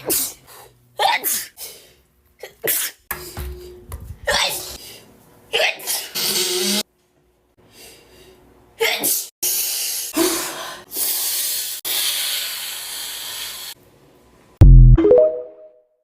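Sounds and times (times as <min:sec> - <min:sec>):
person sneezing: 0:01.0 - 0:01.6, 0:02.4 - 0:03.0, 0:08.8 - 0:09.3.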